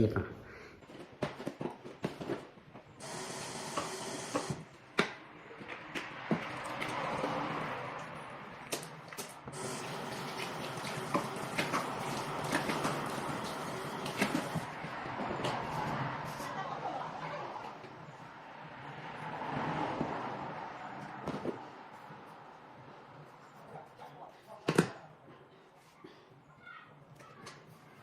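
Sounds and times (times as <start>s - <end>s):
tap water running into sink: 8.0s - 14.7s.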